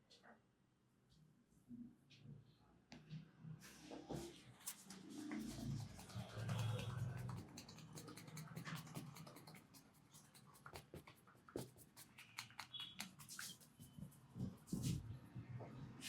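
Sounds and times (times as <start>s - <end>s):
fingers scratching through hair: 4.7s - 15.0s.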